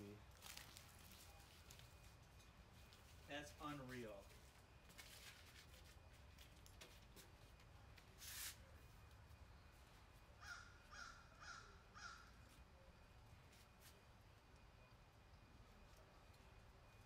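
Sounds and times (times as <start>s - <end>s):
brief hiss: 8.2s - 8.6s
crow cawing faintly: 10.4s - 12.6s.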